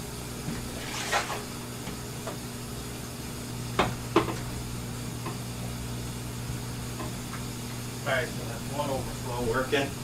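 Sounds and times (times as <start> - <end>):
pump electric hum: 0.0 - 10.0
water hissing through pipes: 0.7 - 1.6.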